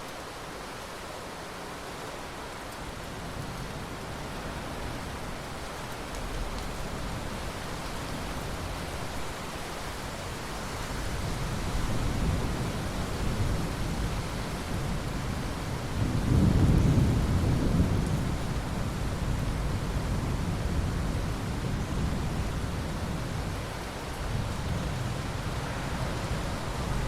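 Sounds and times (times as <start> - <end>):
steady rain: 0.0 - 27.0
thunder rumbling: 14.7 - 23.6.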